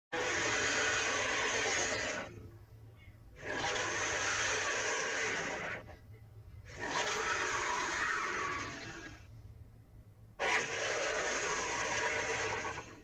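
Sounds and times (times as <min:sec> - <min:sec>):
dinosaur roar: 0:00.1 - 0:02.5, 0:03.4 - 0:06.0, 0:06.7 - 0:09.3, 0:10.4 - 0:13.0.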